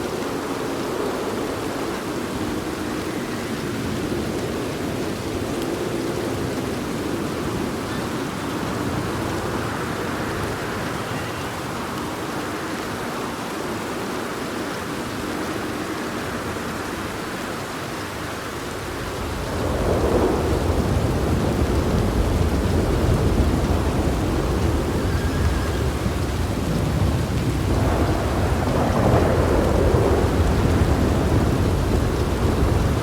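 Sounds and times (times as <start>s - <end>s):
heavy rain: 0.0s - 33.0s
thunder rumbling: 1.3s - 13.9s, 14.8s - 33.0s.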